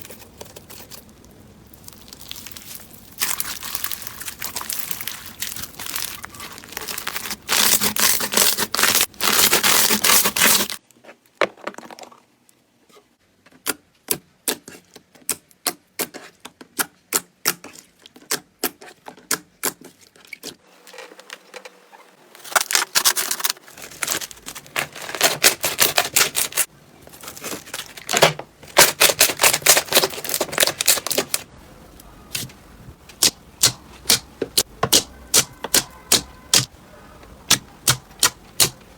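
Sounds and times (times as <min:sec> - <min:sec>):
slime crackling: 0:00.6 - 0:10.8.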